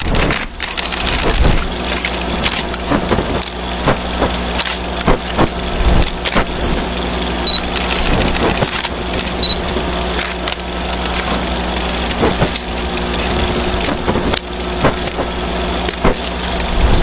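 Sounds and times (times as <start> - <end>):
film projector motor hum: 0.0 - 17.0
high beeps: 7.4 - 7.7, 9.4 - 9.6.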